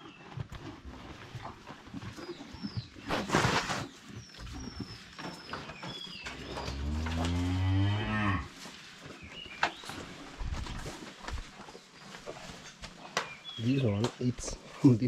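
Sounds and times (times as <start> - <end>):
cow mooing: 6.7 - 8.5.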